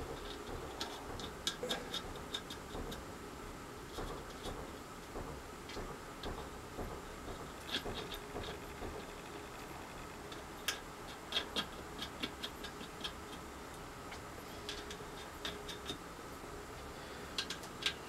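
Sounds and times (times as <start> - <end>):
light irregular clicks: 17.3 - 18.0.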